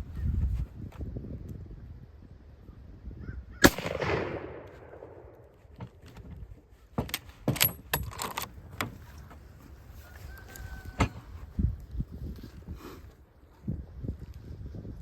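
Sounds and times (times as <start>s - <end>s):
rifle shot echoing: 3.6s - 5.7s
rifle bolt metallic clacks: 7.0s - 9.0s.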